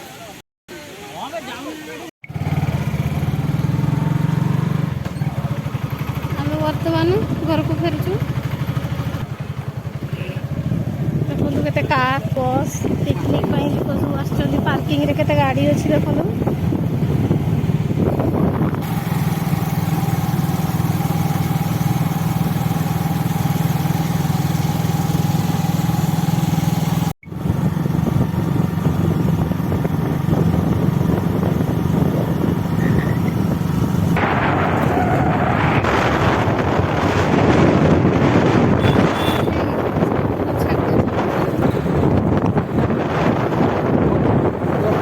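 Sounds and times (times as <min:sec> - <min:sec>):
vehicle engine and road drone: 0:02.2 - 0:45.0
wind buffeting microphone: 0:06.2 - 0:19.4, 0:27.2 - 0:45.0.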